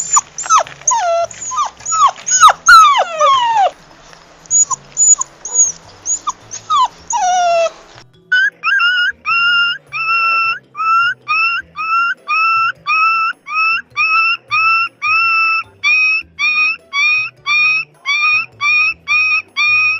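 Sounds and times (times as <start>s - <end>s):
puppy whining and crying: 0.0s - 19.9s.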